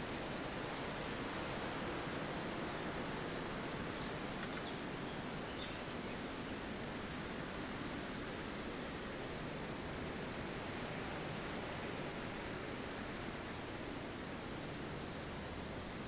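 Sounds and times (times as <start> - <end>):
wind through trees: 0.0 - 16.0.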